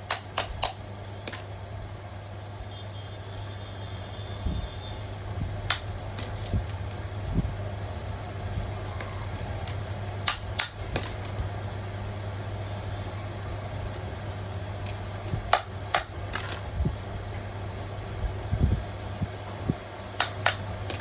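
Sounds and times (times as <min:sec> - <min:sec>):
electric fan motor humming: 0:00.0 - 0:21.0.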